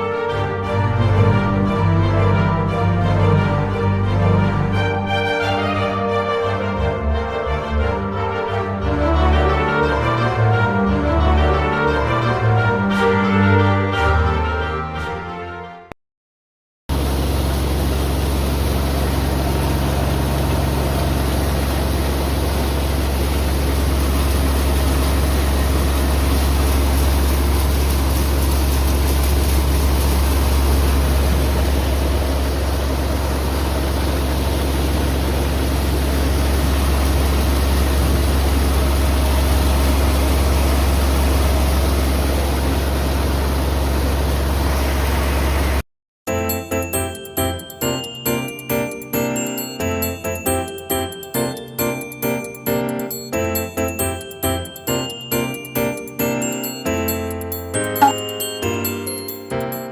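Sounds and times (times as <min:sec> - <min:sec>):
engine running: 0:16.9 - 0:45.8.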